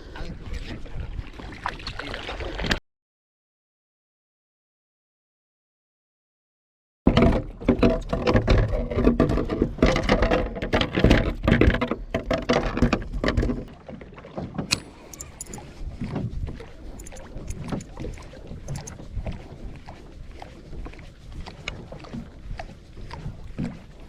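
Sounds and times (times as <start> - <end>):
water splashing against hull: 0.2 - 2.8, 7.1 - 24.0.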